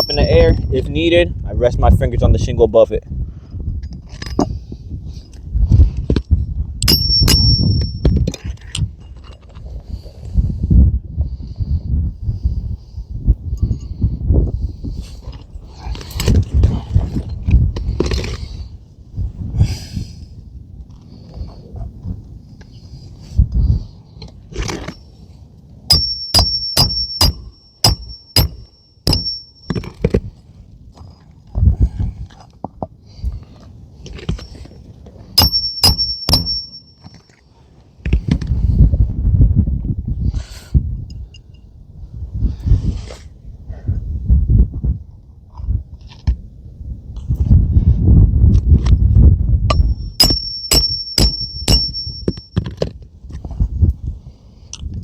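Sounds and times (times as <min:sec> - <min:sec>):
ringing metal clink: 0:00.0 - 0:00.7, 0:06.8 - 0:08.4, 0:25.9 - 0:30.0, 0:35.4 - 0:37.4, 0:49.7 - 0:52.8
hammer tapping on nails: 0:25.9 - 0:29.8, 0:49.7 - 0:52.7.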